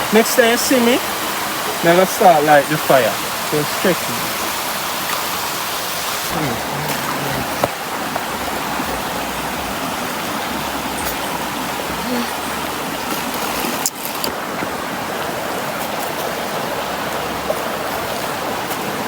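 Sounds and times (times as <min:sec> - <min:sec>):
river water rushing: 0:00.0 - 0:19.0.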